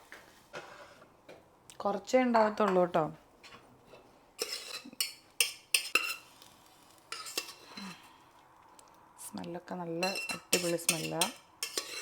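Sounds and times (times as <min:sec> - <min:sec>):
spoon scraping metal pot: 0:03.9 - 0:06.4, 0:07.1 - 0:08.1, 0:10.0 - 0:12.0.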